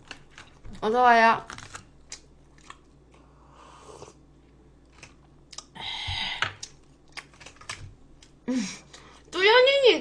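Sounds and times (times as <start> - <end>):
person chewing: 1.5 - 5.8, 6.4 - 9.2.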